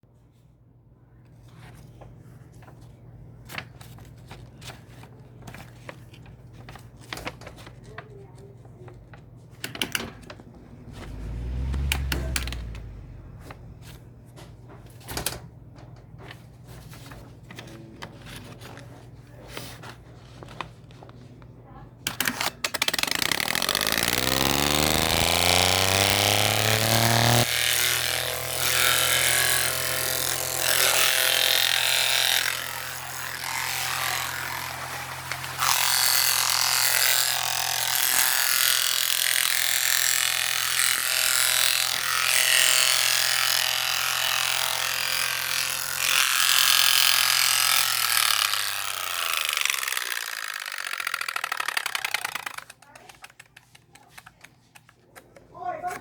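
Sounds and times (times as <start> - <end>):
motor running: 22.8 - 52.6.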